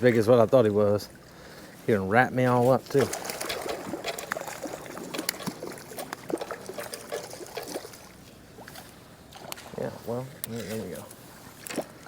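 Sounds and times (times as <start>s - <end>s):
small water splashes: 2.6s - 9.9s, 11.1s - 12.0s
water trickling and dripping: 2.7s - 9.8s.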